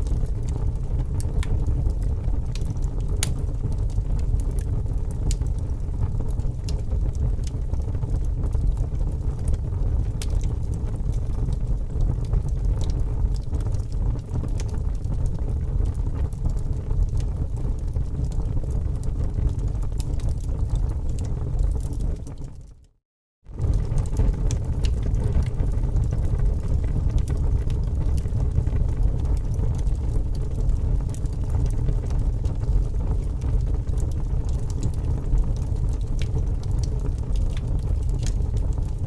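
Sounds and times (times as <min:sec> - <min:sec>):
wood fire crackling and popping: 0:00.0 - 0:22.8, 0:23.5 - 0:39.0
fire low rumble: 0:00.0 - 0:39.0.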